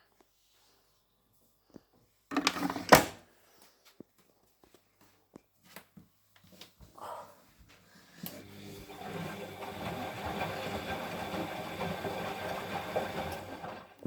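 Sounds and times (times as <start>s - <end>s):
washing machine motor hum: 8.2s - 14.0s.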